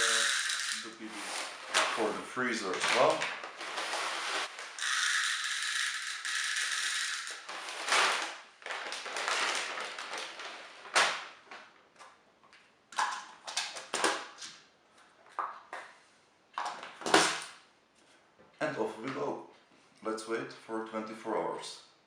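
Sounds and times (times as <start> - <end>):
small objects tapping and clicking: 0.0 - 0.9, 4.7 - 7.6.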